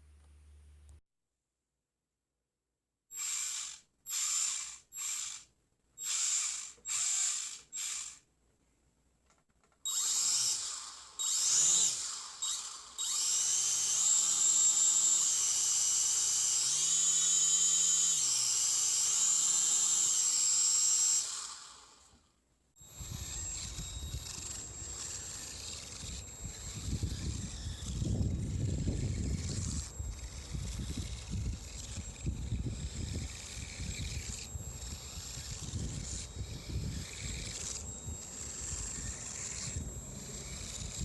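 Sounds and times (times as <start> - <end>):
small electric motors whining: 3.1 - 8.3, 9.8 - 41.0.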